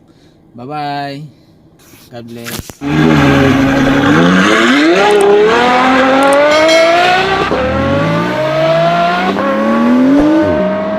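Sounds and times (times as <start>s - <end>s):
car engine accelerating hard: 2.8s - 10.9s.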